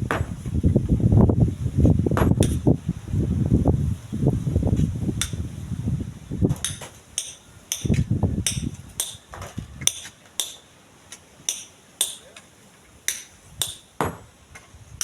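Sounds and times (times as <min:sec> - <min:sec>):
wind rumble on microphone: 0:00.0 - 0:07.1, 0:07.8 - 0:09.9, 0:13.4 - 0:15.0.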